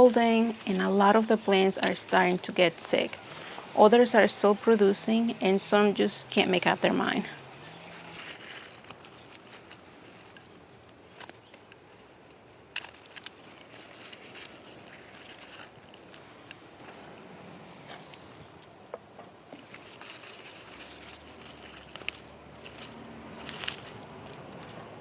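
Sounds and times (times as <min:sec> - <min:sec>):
high insect drone: 0:00.0 - 0:25.0
soft clicks and rustles: 0:12.7 - 0:25.0.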